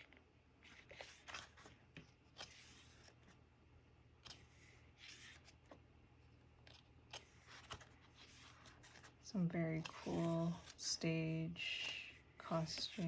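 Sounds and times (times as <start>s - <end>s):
paper pages rustling: 0.0s - 3.4s, 4.2s - 5.8s, 6.6s - 11.0s, 11.8s - 13.0s.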